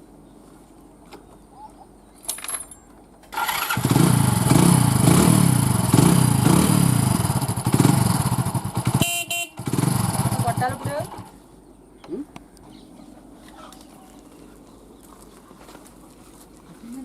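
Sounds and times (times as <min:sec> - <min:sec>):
motorcycle engine starting and revving: 0:03.3 - 0:11.4.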